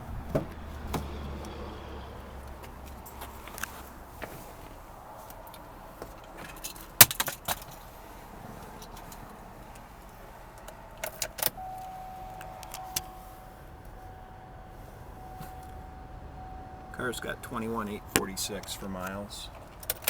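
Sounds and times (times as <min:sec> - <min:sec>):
car keys jangling: 0:05.3 - 0:20.0.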